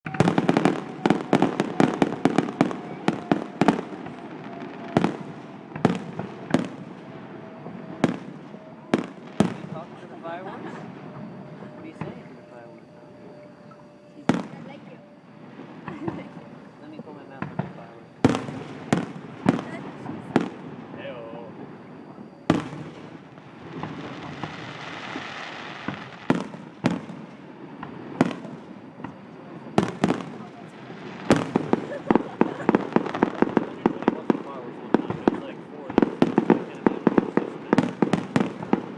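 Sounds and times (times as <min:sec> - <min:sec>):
fireworks bangs: 0:00.1 - 0:38.9
firework hissing fizz: 0:13.7 - 0:28.9, 0:29.8 - 0:34.0
firework pops: 0:23.7 - 0:30.5.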